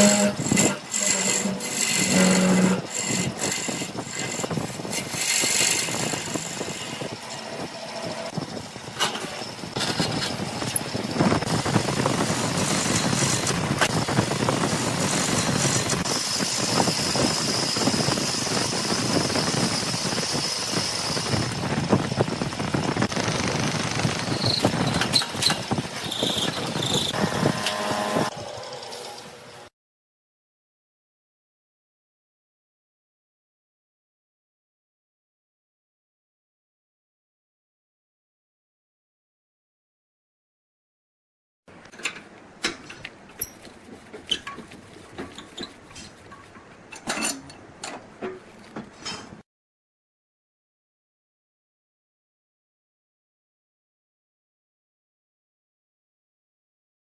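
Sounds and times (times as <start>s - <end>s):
wood lathe scraping and cutting: 0.0s - 21.5s, 23.0s - 29.6s
high steady squeal: 0.0s - 21.8s, 22.8s - 29.6s.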